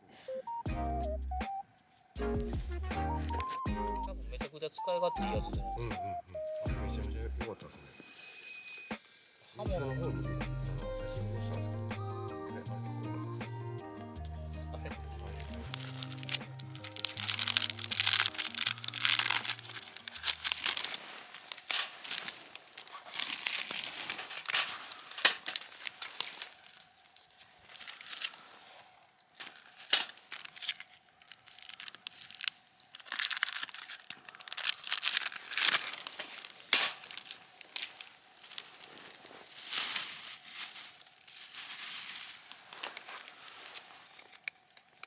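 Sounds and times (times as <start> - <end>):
crinkling and rustling: 15.0 - 45.0.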